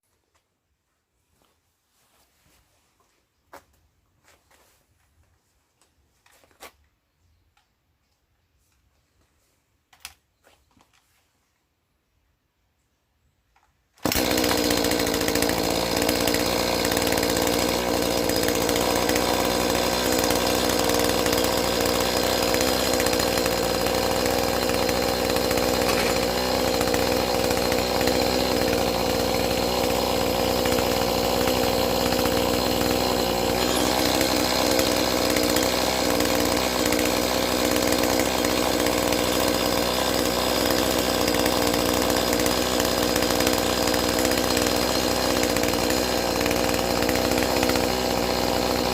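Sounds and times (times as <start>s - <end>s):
chainsaw engine running: 14.0s - 48.9s.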